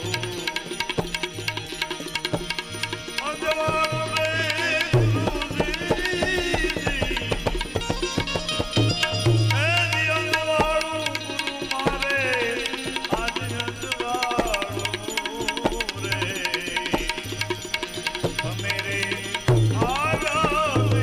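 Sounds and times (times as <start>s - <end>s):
tabla beat: 0.0s - 21.0s.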